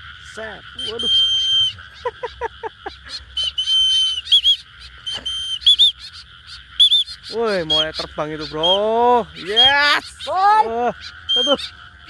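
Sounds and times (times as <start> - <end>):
bird chirps falling: 0.7 - 6.2, 6.8 - 10.4, 11.1 - 11.8
shrill whistles: 0.8 - 2.0, 3.1 - 6.2, 6.8 - 11.7.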